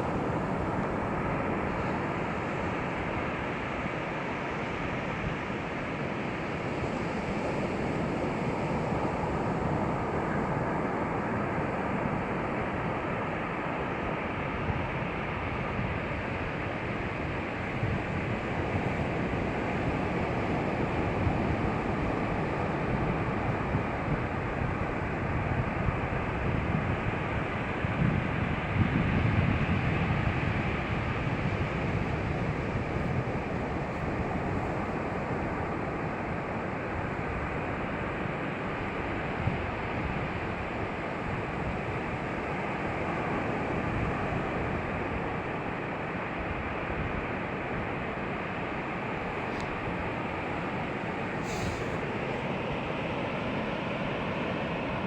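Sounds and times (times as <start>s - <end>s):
waves washing onto beach: 0.0s - 55.0s.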